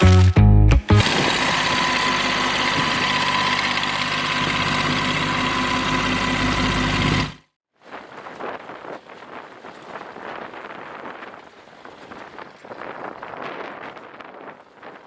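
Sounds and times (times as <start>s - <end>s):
tractor engine running: 0.0s - 7.4s
wind buffeting microphone: 7.9s - 15.0s.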